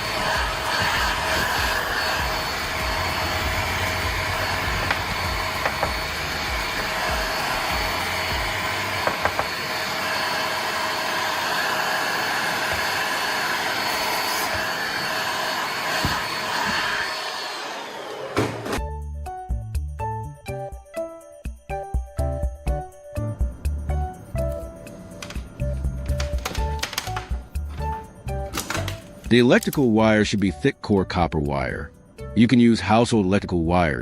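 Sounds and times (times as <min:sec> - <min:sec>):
power tool motor whirring: 0:00.0 - 0:18.8.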